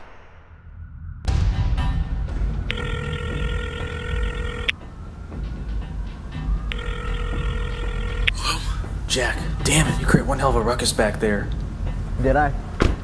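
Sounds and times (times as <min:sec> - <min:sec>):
low background music: 0:01.3 - 0:13.0
telephone ringing: 0:02.7 - 0:04.7, 0:06.7 - 0:08.4.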